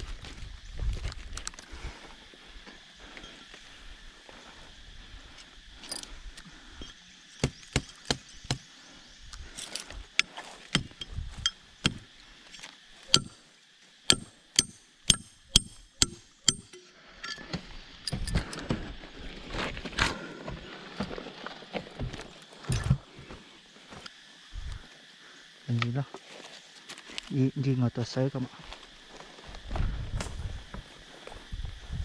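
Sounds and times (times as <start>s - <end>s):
sharp knocks: 10.8s - 11.1s, 13.1s - 13.4s, 14.1s - 16.8s.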